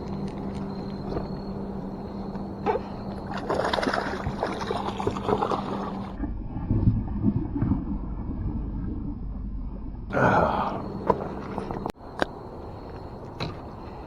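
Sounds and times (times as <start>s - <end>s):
water splashing beside a boat: 0.0s - 6.3s
low rumbling bursts: 6.1s - 11.9s.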